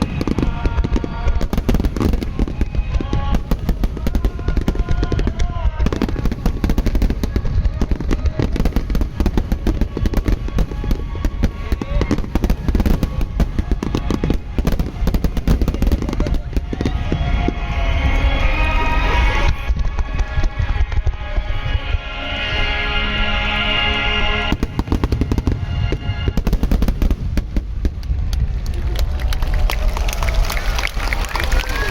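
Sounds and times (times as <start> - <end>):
fireworks bursting and booming: 0.0 - 31.9
music with sustained melodic notes: 9.2 - 27.3.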